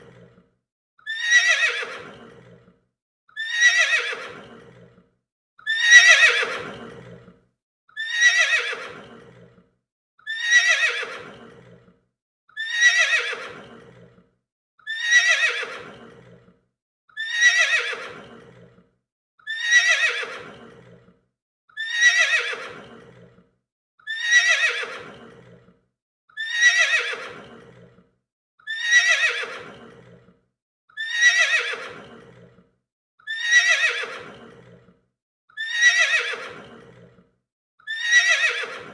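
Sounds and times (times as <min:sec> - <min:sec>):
horse whinnying: 0:01.1 - 0:02.6, 0:03.4 - 0:05.0, 0:05.6 - 0:07.4, 0:08.0 - 0:09.5, 0:10.3 - 0:11.8, 0:12.6 - 0:14.1, 0:14.9 - 0:16.4, 0:17.2 - 0:18.7, 0:19.5 - 0:21.0, 0:21.8 - 0:23.3, 0:24.1 - 0:25.6, 0:26.4 - 0:27.9, 0:28.7 - 0:30.2, 0:31.0 - 0:32.6, 0:33.3 - 0:34.8, 0:35.6 - 0:37.1, 0:37.9 - 0:38.9.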